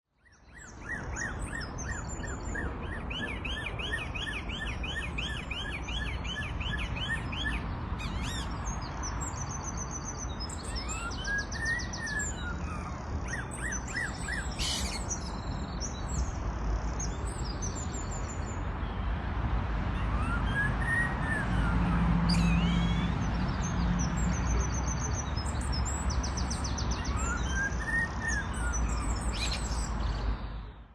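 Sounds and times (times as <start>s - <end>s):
high bird chirps: 13.9s - 15.3s.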